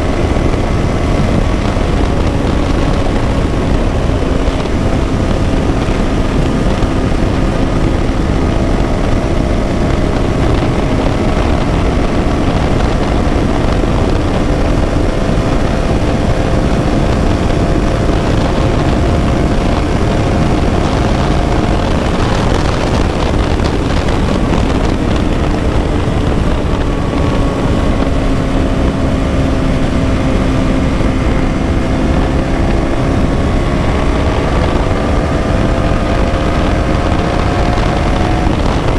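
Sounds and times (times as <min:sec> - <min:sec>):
low wind noise: 0:00.0 - 0:38.9
motorcycle engine cruising: 0:00.0 - 0:38.9.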